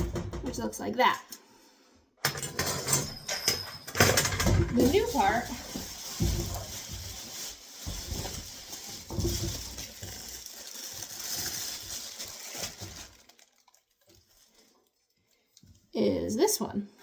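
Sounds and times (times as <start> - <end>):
rustling handling noise: 3.6 - 15.9.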